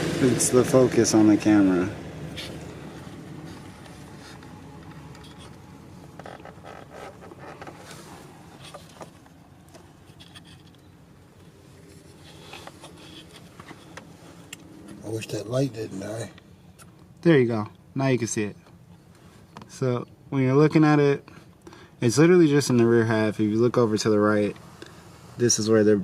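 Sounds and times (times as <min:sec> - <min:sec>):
light clicks and rustles: 0:02.3 - 0:15.1.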